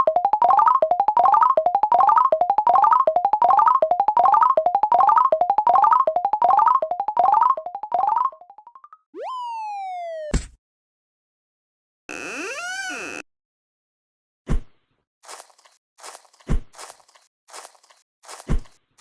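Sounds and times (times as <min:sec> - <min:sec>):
synthesized rising note run: 0:12.1 - 0:13.2.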